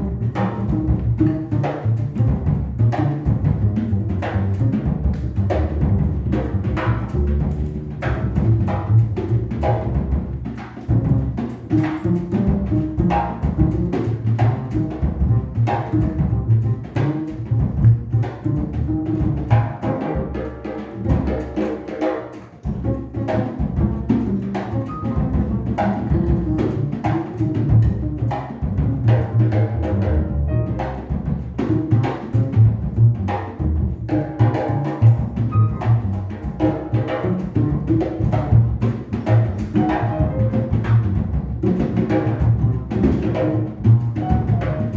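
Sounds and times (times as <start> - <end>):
double bass: 0.0 - 44.9
drum kit: 0.0 - 44.9
acoustic piano: 30.4 - 31.5, 35.4 - 36.2, 39.6 - 41.5, 44.2 - 44.9.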